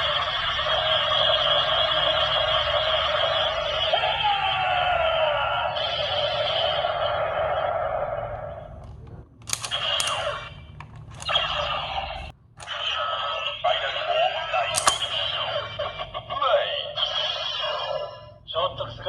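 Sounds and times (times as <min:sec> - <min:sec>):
plastic clicks: 0:08.8 - 0:11.4, 0:14.7 - 0:15.2
toy electronic sound effects: 0:09.5 - 0:18.3
toy speaker voice: 0:09.6 - 0:10.6, 0:11.2 - 0:19.0.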